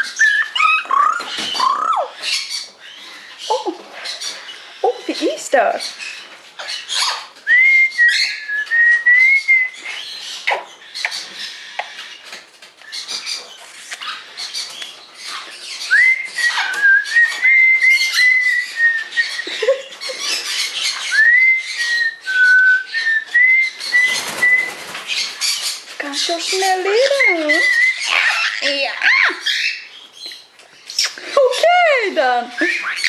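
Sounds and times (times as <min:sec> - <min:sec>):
bird chirps and chatter: 0:00.0 - 0:33.0
whistled melody: 0:07.5 - 0:09.8, 0:21.1 - 0:24.8.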